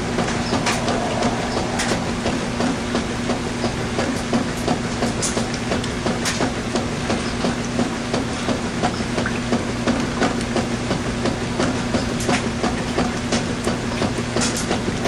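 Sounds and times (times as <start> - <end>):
washing machine motor hum: 0.0 - 15.0.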